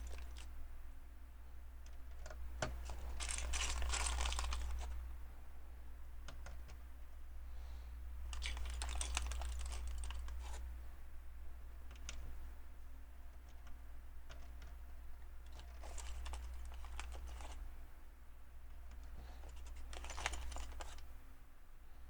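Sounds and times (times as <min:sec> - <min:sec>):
low steady hum: 0:00.0 - 0:22.0
plastic pieces clicking: 0:01.8 - 0:04.9, 0:08.3 - 0:10.5, 0:15.5 - 0:17.6, 0:18.9 - 0:21.0.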